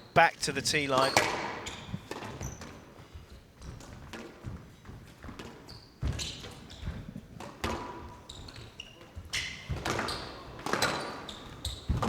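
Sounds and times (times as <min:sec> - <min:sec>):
shoes squeaking on court floor: 0:00.1 - 0:02.6.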